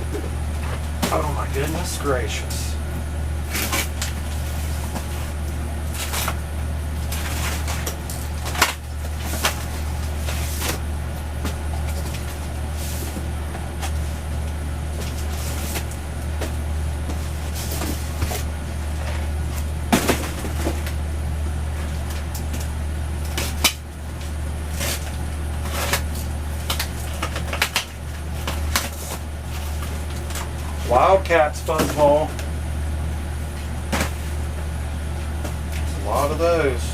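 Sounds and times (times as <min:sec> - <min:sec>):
steady low hum: 0:00.0 - 0:36.9
cardboard boxes being handled: 0:33.4 - 0:34.6.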